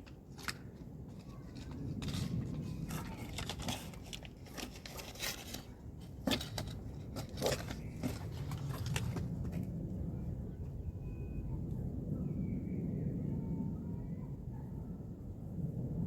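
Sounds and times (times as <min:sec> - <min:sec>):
crinkling and rustling handling: 0:00.0 - 0:10.2.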